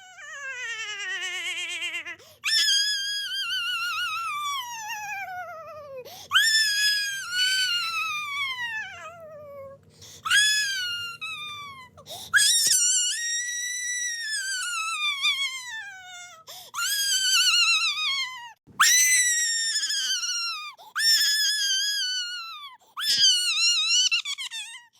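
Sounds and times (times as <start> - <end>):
faint low hum: 0.0 - 19.3
high-pitched cartoon crying: 0.0 - 24.9.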